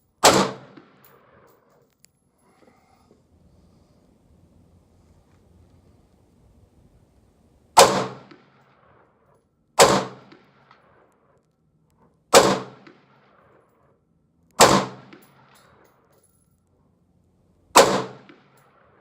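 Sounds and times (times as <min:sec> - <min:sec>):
gunshots: 0:00.2 - 0:01.5, 0:07.8 - 0:08.4, 0:09.8 - 0:10.6, 0:12.3 - 0:13.1, 0:14.6 - 0:15.3, 0:17.8 - 0:19.0.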